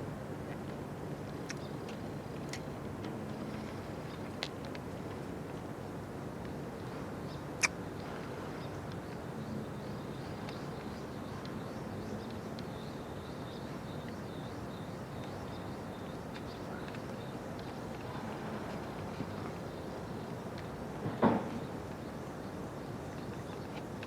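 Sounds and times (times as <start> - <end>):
outdoor background noise: 0.0 - 24.0
faint bird chirps: 8.0 - 20.3.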